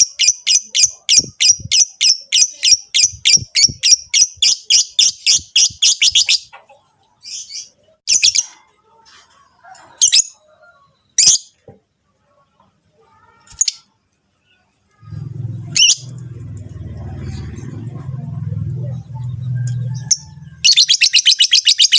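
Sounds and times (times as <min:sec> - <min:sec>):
lovebirds chirping: 0:13.2 - 0:21.9.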